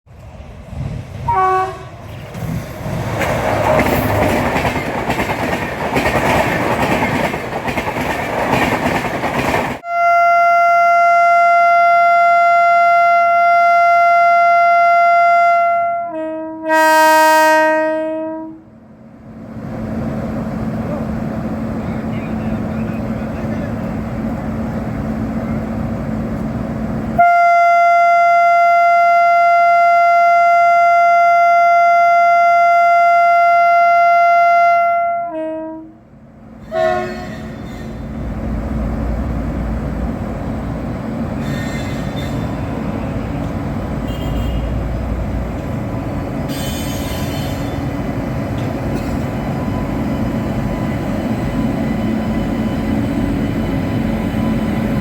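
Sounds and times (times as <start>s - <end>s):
train rumbling: 0.1s - 9.9s, 10.5s - 55.0s
locomotive air horn: 1.3s - 2.0s, 9.8s - 18.7s, 27.2s - 36.0s, 36.6s - 38.1s, 44.0s - 45.0s.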